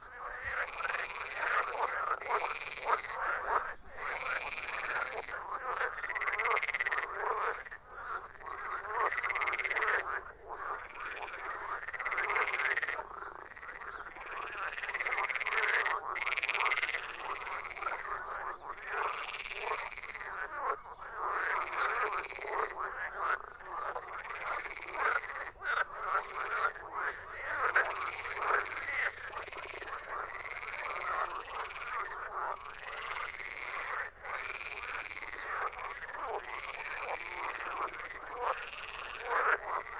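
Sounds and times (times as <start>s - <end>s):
frogs croaking in chorus: 0.0s - 39.9s.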